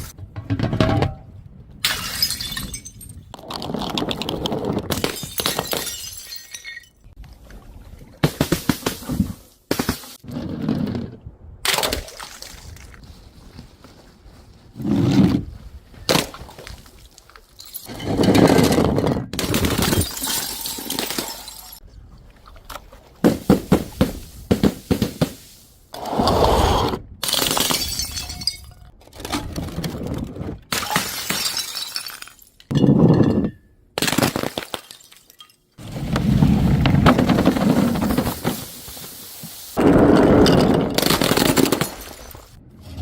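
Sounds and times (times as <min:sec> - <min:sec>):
glass bottles shattering: 0:01.8 - 0:03.3, 0:04.9 - 0:07.1, 0:17.5 - 0:18.2, 0:19.5 - 0:21.8, 0:27.2 - 0:28.9, 0:30.7 - 0:35.8, 0:40.4 - 0:42.6.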